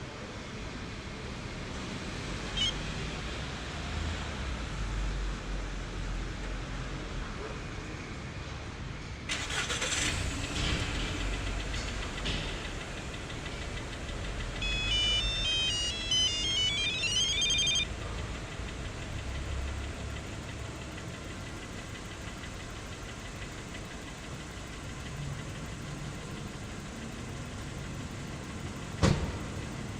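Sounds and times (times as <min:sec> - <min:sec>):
car engine idling with knock: 0:10.3 - 0:15.2, 0:18.0 - 0:29.9
electronic chime rising beeps: 0:14.6 - 0:17.9.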